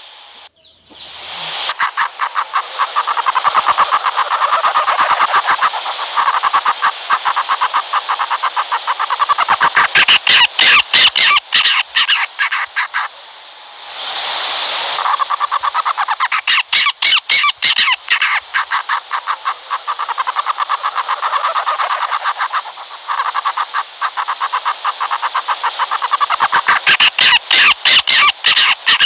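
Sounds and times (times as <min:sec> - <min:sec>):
owl breathy hiss: 0:00.0 - 0:29.0
barn owl rasping call: 0:00.4 - 0:13.1, 0:15.0 - 0:29.0.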